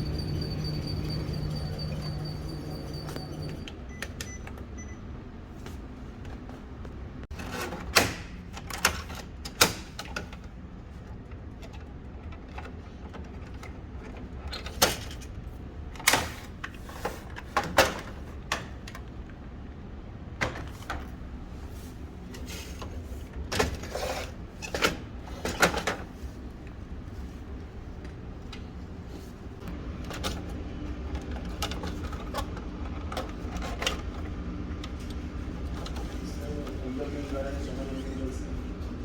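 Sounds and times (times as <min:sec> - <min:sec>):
steady low hum: 0:00.0 - 0:07.3.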